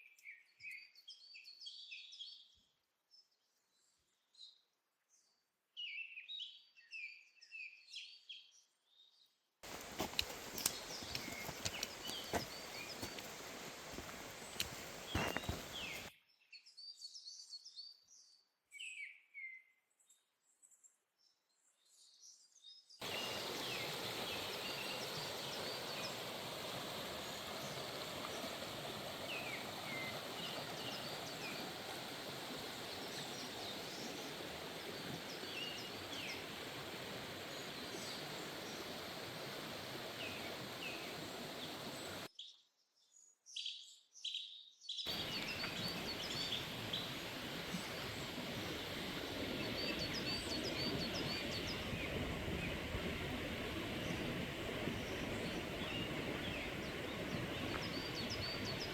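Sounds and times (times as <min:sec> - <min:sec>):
small birds chirping: 0:09.6 - 0:16.1, 0:23.0 - 0:58.9
steady rushing noise: 0:45.1 - 0:58.9.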